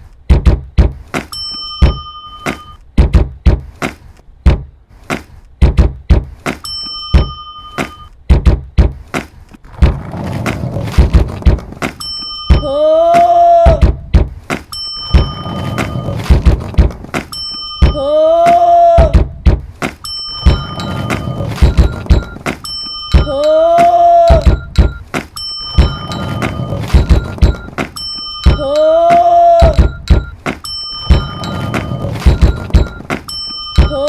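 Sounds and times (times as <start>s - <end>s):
rhythmic beat of thuds: 0.0s - 34.0s
bell-like ding: 1.3s - 2.8s, 6.6s - 8.1s, 11.9s - 12.8s, 14.7s - 18.0s, 20.0s - 34.0s
pitched tone bending: 9.7s - 34.0s.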